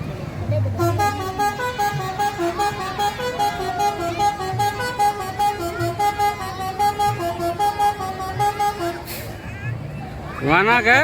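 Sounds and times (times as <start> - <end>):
musical air horns playing tune: 0.8 - 9.4.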